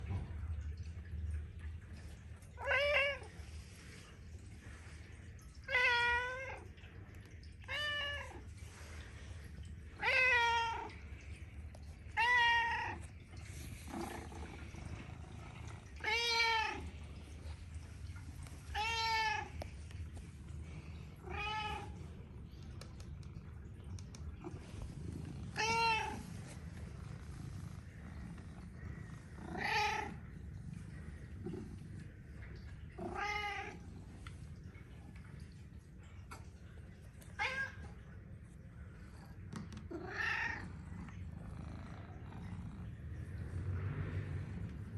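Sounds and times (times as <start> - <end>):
cat meowing: 25.6 - 26.2.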